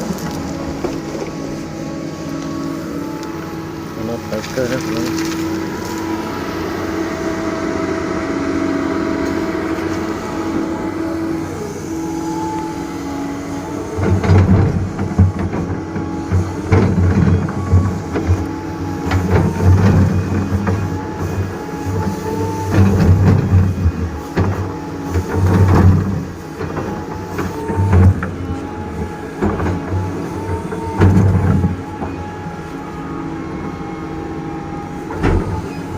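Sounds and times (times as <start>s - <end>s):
excavator diesel engine under load: 0.0s - 35.9s
steady machine whine: 0.0s - 35.9s.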